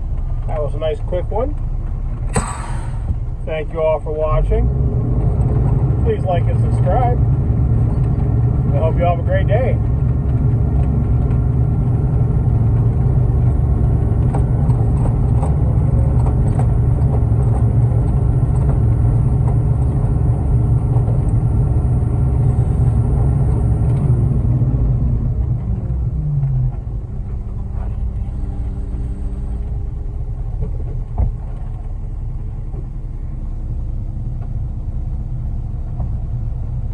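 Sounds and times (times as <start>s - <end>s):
diesel truck engine running: 0.0s - 36.9s.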